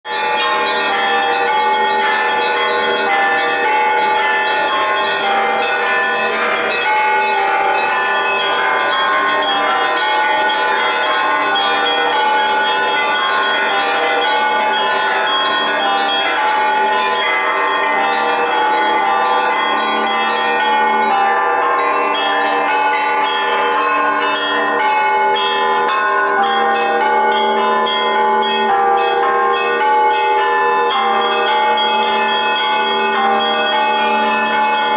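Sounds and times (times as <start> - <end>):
church bells ringing: 0.1 - 34.9.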